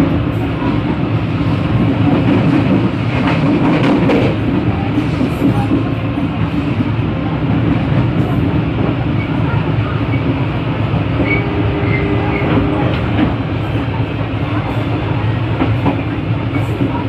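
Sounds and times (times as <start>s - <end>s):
train wheels rumbling on rails: 0.0s - 17.0s.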